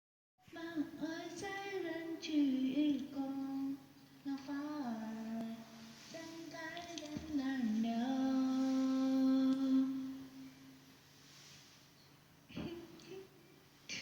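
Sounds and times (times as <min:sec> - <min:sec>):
high singing voice: 0:00.4 - 0:10.8.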